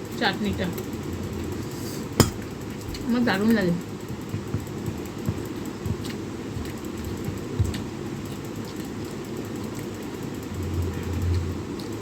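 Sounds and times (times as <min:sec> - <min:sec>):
soft low thumps: 0:04.1 - 0:08.0.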